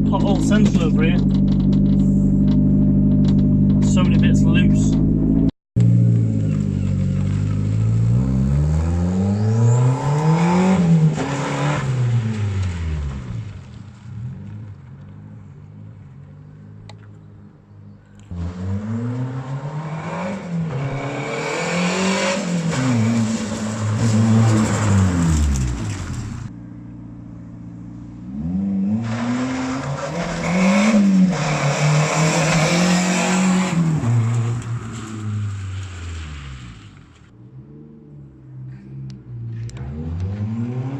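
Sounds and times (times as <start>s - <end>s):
car engine accelerating hard: 0.0s - 15.5s, 28.2s - 37.0s.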